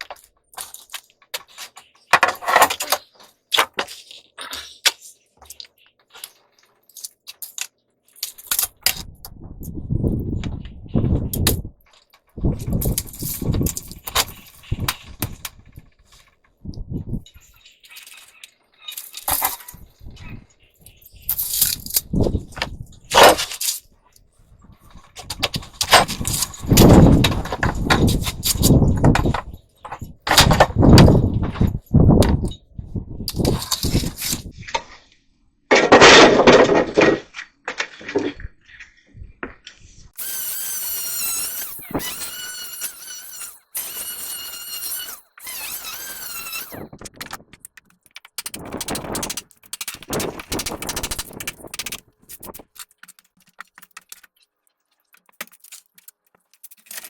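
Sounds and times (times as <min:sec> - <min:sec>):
rotten wood breaking and crunching: 0:35.7 - 0:39.0, 0:45.1 - 0:57.0.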